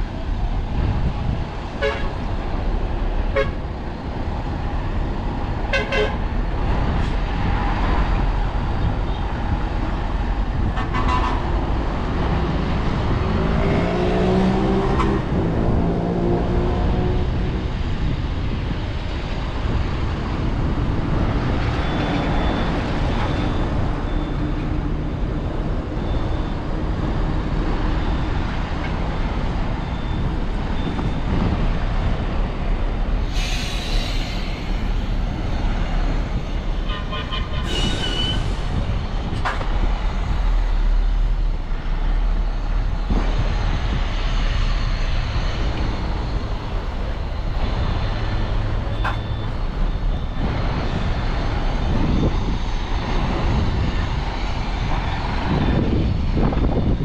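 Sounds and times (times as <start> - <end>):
heavy diesel machinery running: 16.9 - 57.0.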